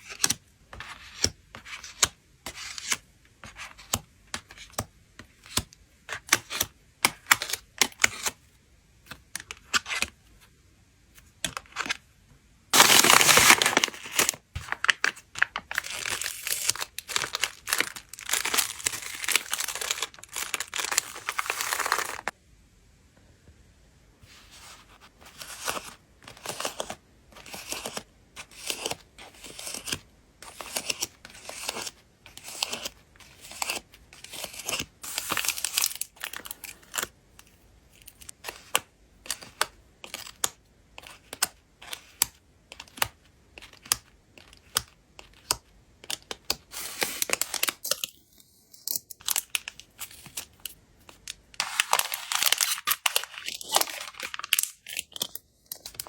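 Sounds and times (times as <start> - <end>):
plastic and paper crinkling: 12.8 - 22.3, 49.2 - 56.0.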